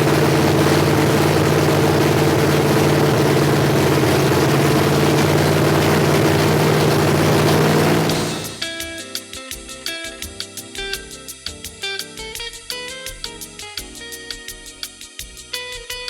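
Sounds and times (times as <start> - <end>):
loud engine on open headers: 0.0 - 8.7
guitar music: 6.8 - 10.1.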